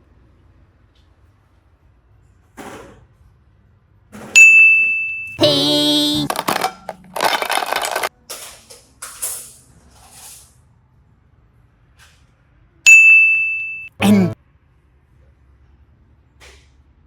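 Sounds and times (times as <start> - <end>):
short pitched vocal note: 5.4 - 6.3, 14.0 - 14.4
bright bell-like ding: 12.9 - 13.9.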